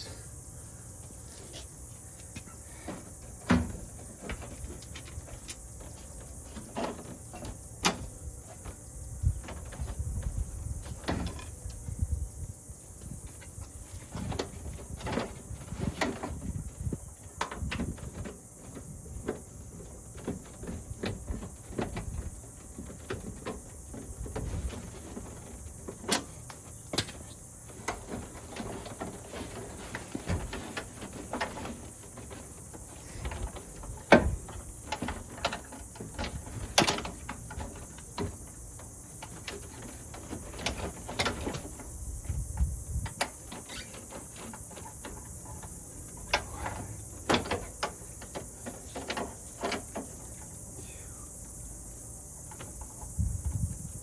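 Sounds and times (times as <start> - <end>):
steady background hiss: 0.0 - 54.0
metal clicks and knocks in car door: 43.0 - 50.5.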